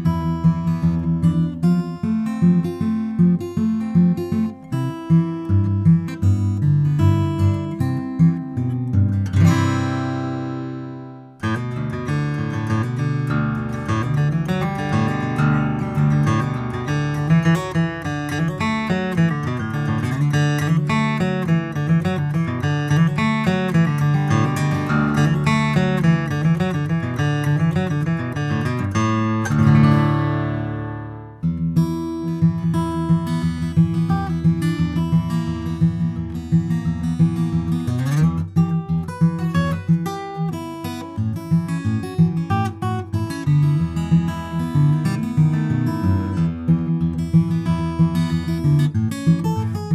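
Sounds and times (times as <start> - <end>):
acoustic guitar strummed and picked: 0.0 - 49.9.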